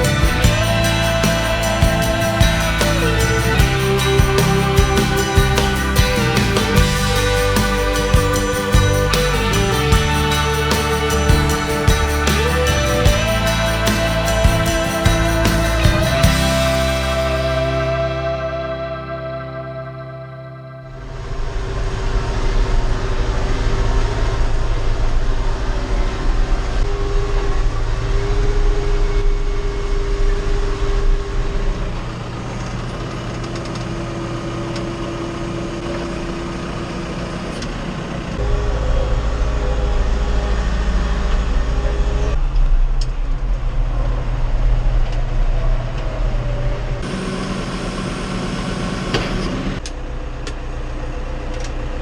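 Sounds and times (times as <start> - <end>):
tractor engine running: 0.0 - 21.5.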